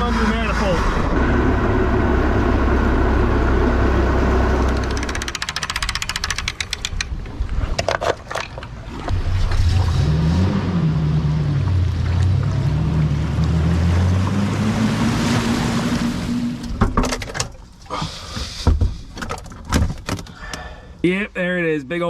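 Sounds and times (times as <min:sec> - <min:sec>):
boat engine running: 0:00.0 - 0:06.8, 0:09.1 - 0:17.0
rapid clicks: 0:04.7 - 0:07.2.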